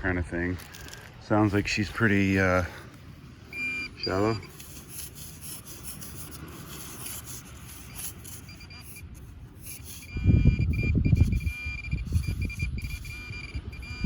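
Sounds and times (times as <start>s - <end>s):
metal detector buzzing tone: 7.8s - 14.0s.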